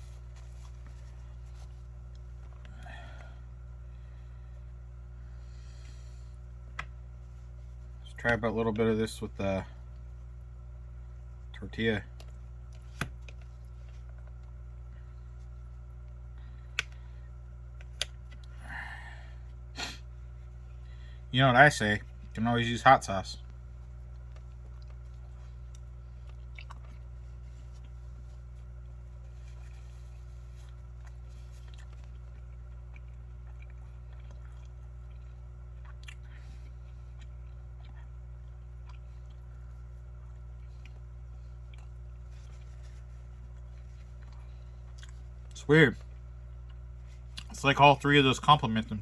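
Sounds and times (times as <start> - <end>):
steady low hum: 0.0 - 49.0
person chewing food: 23.7 - 47.6.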